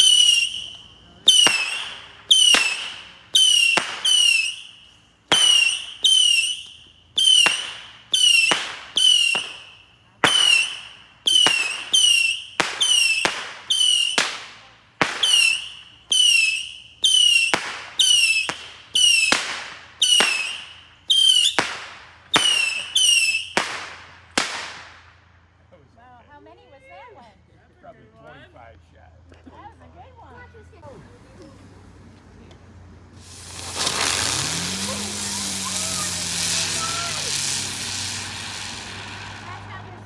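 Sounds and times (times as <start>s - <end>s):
fireworks popping and whistling: 0.0s - 25.0s, 33.2s - 40.0s.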